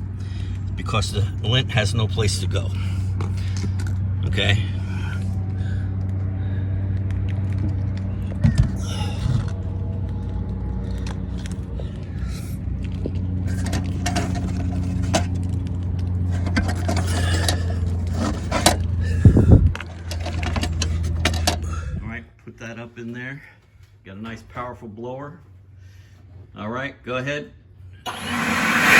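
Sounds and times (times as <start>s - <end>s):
low machine hum: 0.0s - 22.6s, 27.7s - 28.9s
clicks and knocks of parts handled: 19.7s - 21.7s.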